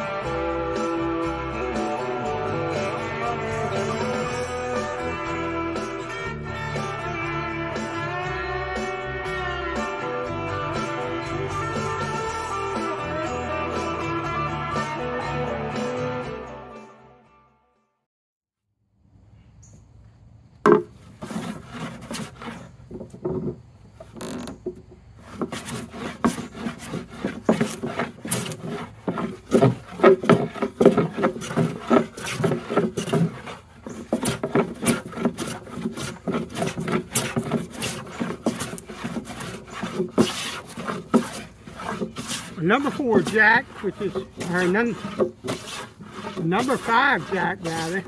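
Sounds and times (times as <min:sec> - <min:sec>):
bench plane shaving wood: 0:20.7 - 0:48.0.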